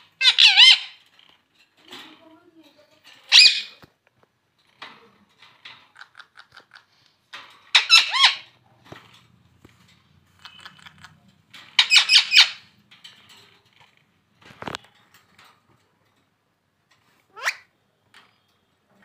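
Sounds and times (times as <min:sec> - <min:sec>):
parrot shrill squawks: 0:00.2 - 0:01.0, 0:03.3 - 0:03.7, 0:07.8 - 0:08.5, 0:11.8 - 0:12.6, 0:17.3 - 0:17.7.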